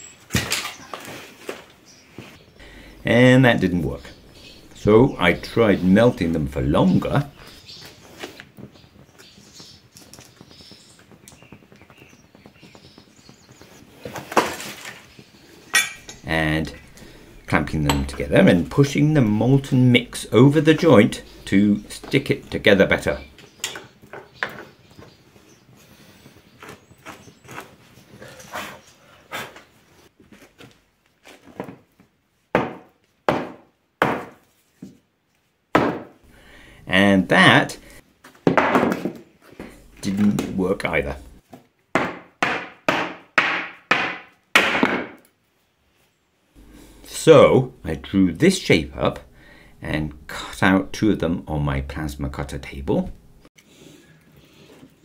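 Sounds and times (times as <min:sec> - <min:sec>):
small birds chirping: 0:00.0 - 0:30.1
sharp loud knocks: 0:42.0 - 0:45.2.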